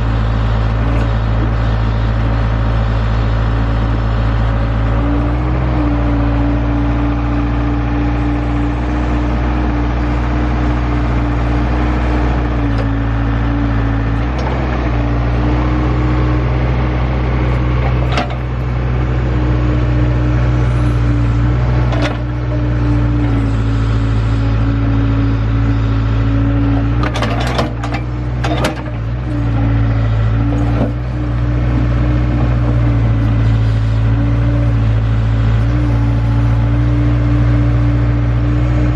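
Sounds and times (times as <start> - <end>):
digging machine engine running: 0.0 - 38.9
metallic knocks and clanks: 17.8 - 18.6, 21.9 - 22.4, 26.8 - 29.2.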